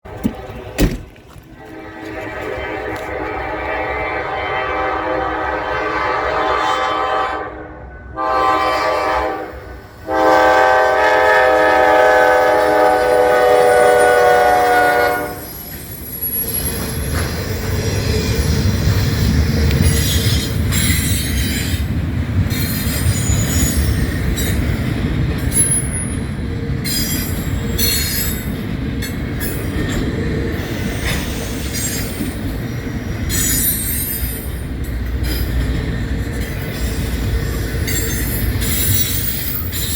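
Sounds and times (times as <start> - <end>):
wheels clicking over rail joints: 0.0 - 1.6, 15.7 - 39.9
locomotive air horn: 1.6 - 15.5
wheels squealing: 22.5 - 24.7, 30.6 - 34.6.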